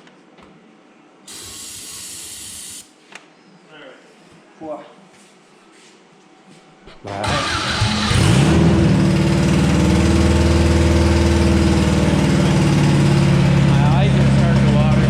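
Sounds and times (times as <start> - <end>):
car engine starting and running: 7.2 - 15.0.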